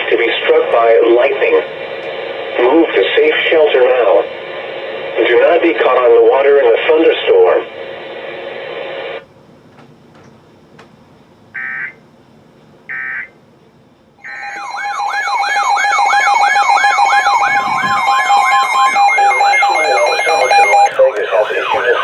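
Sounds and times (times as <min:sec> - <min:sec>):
screeching digital data bursts: 0:14.2 - 0:20.9
warbling siren-like alert tone: 0:14.2 - 0:22.0.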